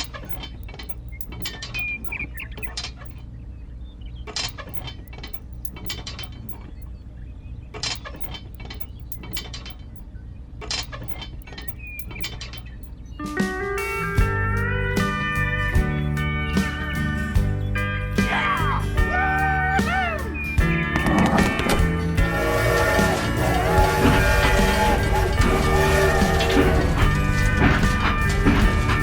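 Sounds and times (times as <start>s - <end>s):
light metallic clinks: 0.0s - 3.2s, 4.3s - 6.9s, 7.9s - 10.1s, 10.8s - 13.0s
sharp clicks: 0.0s - 3.3s, 4.2s - 7.0s, 7.7s - 13.3s, 19.8s - 22.1s.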